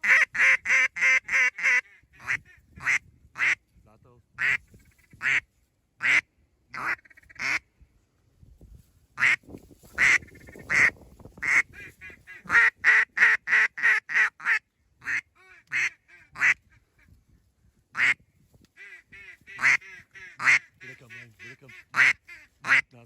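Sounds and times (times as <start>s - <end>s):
duck quacking: 0.0s - 3.6s, 4.4s - 5.4s, 6.0s - 7.6s, 10.0s - 16.8s, 18.8s - 23.0s.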